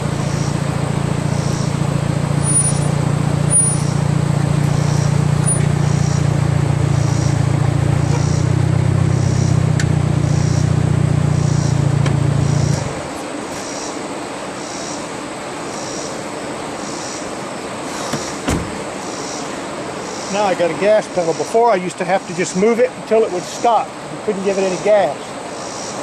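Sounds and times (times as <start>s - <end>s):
car engine idling: 0.0s - 13.9s.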